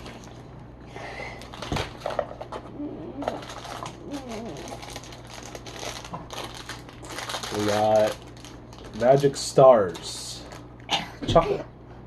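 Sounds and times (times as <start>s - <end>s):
plastic wrappers crinkling: 1.4s - 2.4s, 3.2s - 10.7s.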